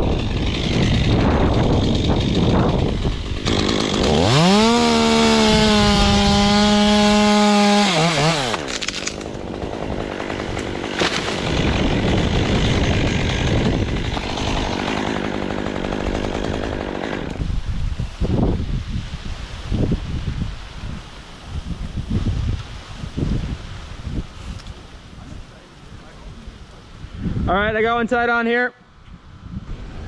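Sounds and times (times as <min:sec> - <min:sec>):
chainsaw revving: 0:00.0 - 0:17.5
wind rushing through leaves: 0:00.0 - 0:28.1, 0:28.9 - 0:30.0.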